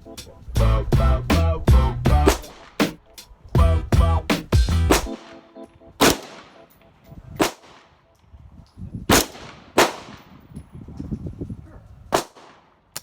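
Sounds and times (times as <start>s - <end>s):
gunshots with short echo: 4.9s - 6.7s.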